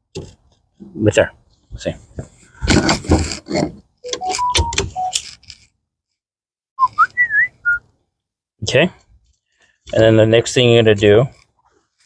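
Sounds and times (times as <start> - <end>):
short high squeaks: 6.8 - 7.8.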